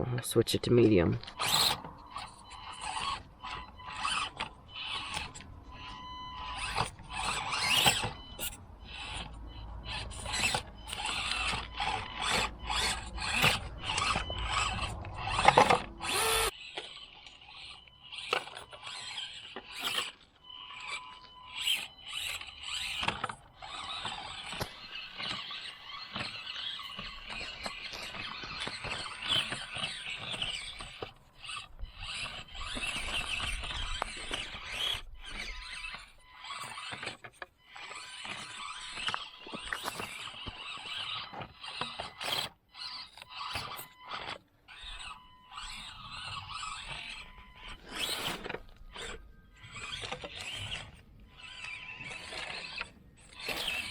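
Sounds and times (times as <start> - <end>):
small electric motor whirring: 1.2 - 53.9.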